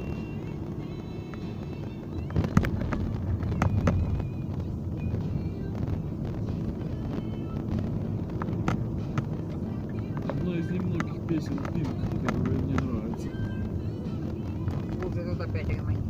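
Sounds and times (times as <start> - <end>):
car tyres and engine rumble: 0.0 - 16.0
faint car stereo music: 0.0 - 16.0
knocks and rattles from road: 0.0 - 16.0.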